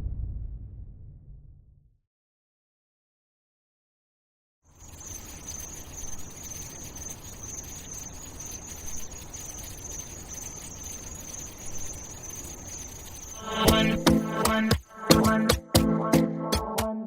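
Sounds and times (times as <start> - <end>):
low hum: 0.0 - 1.9
high insect-like chirring: 4.7 - 15.7.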